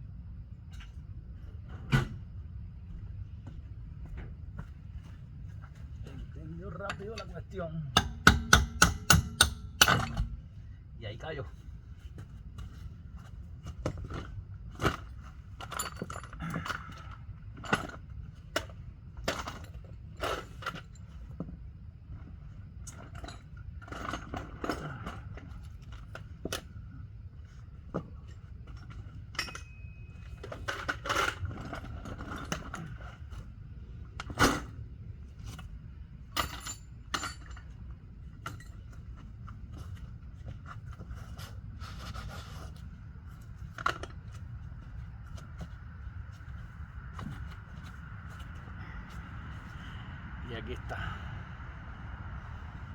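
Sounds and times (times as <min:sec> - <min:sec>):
steady low hum: 0:00.0 - 0:52.9
metal tools clinking and scraping: 0:06.1 - 0:10.4, 0:14.0 - 0:18.1, 0:28.3 - 0:33.4, 0:36.3 - 0:39.2
sharp metal knock: 0:08.0 - 0:10.3.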